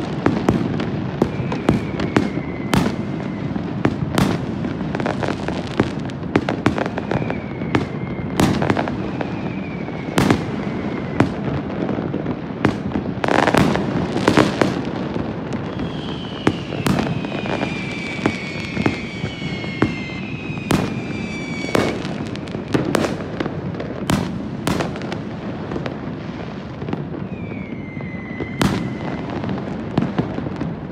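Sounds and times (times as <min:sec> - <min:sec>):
fireworks bangs and crackles: 0:00.0 - 0:30.9
firework whistles falling in pitch: 0:01.2 - 0:04.4, 0:06.6 - 0:11.6, 0:15.6 - 0:23.2, 0:27.2 - 0:30.4.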